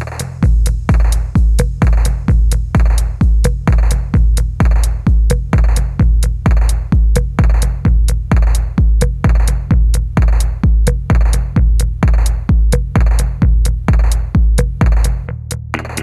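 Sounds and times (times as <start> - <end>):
deep kick drum: 0.0 - 16.0
electronic dance music: 15.8 - 16.0.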